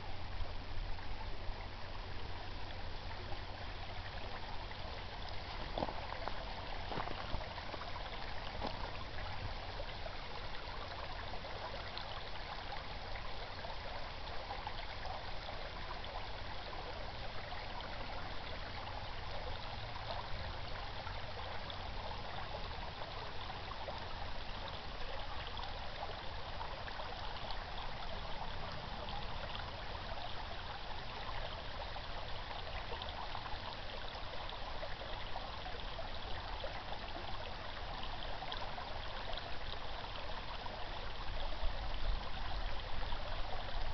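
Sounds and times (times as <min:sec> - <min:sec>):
brook babbling: 0:00.0 - 0:43.9.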